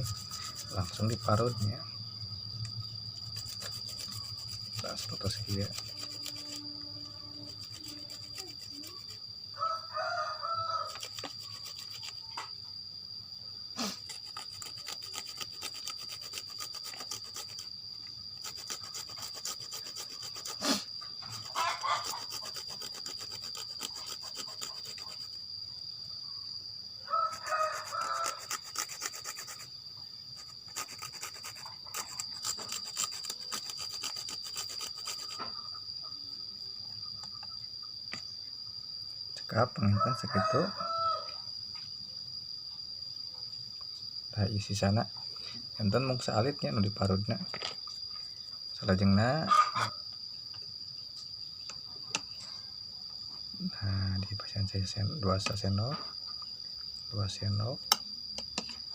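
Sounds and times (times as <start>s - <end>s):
hand grater rasping: 0.0s - 1.7s, 3.4s - 6.6s, 7.5s - 9.1s, 10.9s - 12.1s, 14.0s - 17.7s, 18.4s - 25.3s, 27.8s - 29.7s, 30.6s - 35.4s
rooster crowing: 9.4s - 11.4s, 21.4s - 22.4s, 27.0s - 28.8s, 39.5s - 41.6s, 49.1s - 50.0s.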